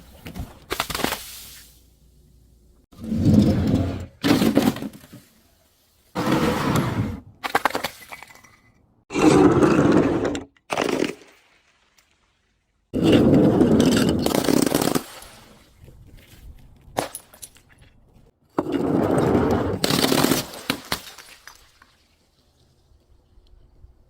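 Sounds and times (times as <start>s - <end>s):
sharp cracks and snaps: 0.6s - 1.4s.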